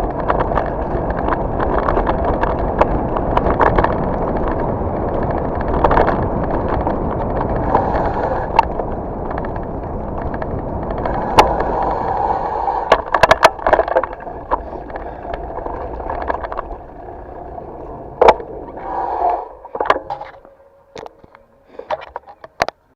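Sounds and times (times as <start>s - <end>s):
bike knocks and rattles over bumps: 0.0s - 11.9s, 12.8s - 17.5s, 18.1s - 18.6s
bike tyres rolling on dirt: 0.0s - 22.9s.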